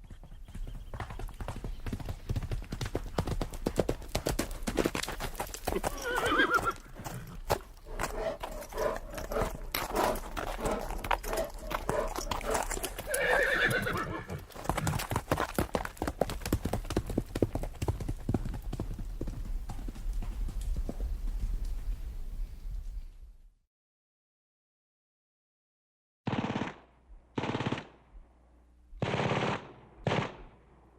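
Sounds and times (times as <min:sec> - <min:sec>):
horse hooves clopping on hard surface: 0:00.0 - 0:22.0
horse whinnying: 0:05.7 - 0:14.9.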